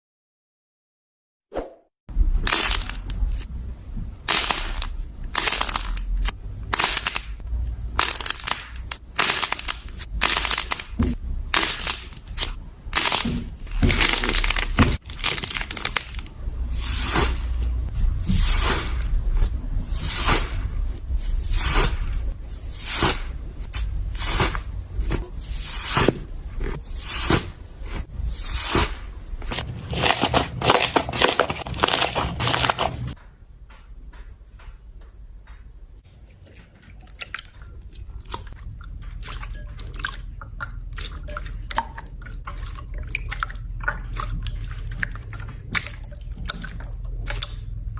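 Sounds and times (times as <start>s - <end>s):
slime crackling and crunching: 2.4s - 3.5s, 4.3s - 17.4s, 29.5s - 33.2s
slime squishing: 4.2s - 33.2s, 36.2s - 47.9s.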